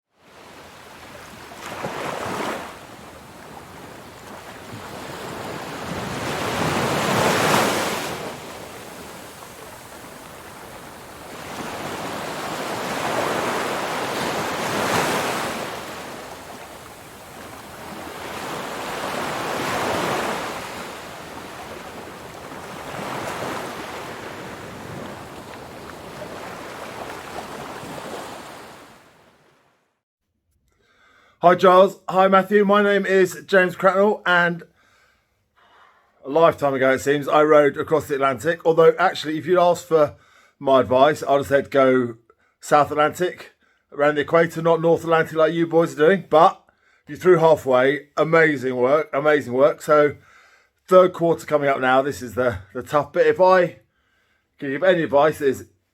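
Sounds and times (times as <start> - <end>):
ocean waves washing: 0.2 - 29.8.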